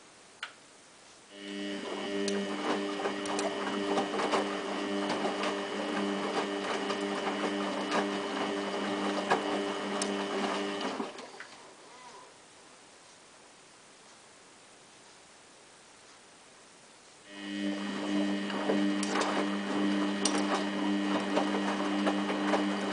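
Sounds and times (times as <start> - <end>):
washing machine motor whine: 1.3 - 11.7, 17.3 - 22.9.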